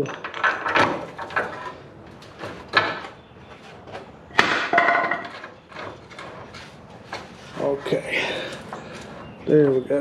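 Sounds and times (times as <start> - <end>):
metal tools clanking: 0.0 - 3.2, 4.4 - 6.5.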